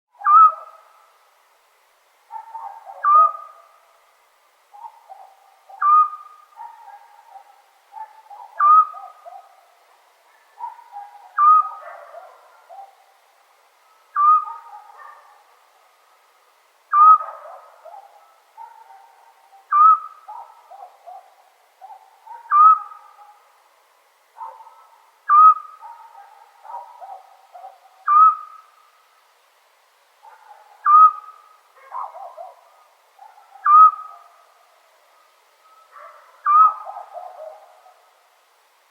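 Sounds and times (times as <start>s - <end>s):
owl whistled call: 0.2s - 0.8s, 3.0s - 3.6s, 5.7s - 6.5s, 8.3s - 9.2s, 11.3s - 11.8s, 14.1s - 14.7s, 16.9s - 17.2s, 19.7s - 20.3s, 22.5s - 23.2s, 25.3s - 25.8s, 28.0s - 28.8s, 30.8s - 31.6s, 33.6s - 34.2s, 35.6s - 36.9s.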